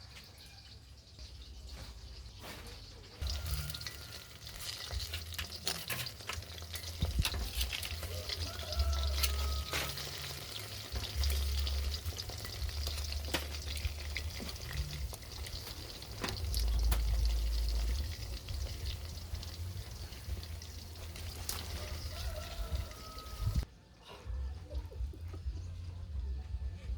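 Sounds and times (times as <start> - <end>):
hot oil sizzling: 1.0 - 23.7
oil popping: 3.2 - 23.7
low rumble: 12.7 - 21.3.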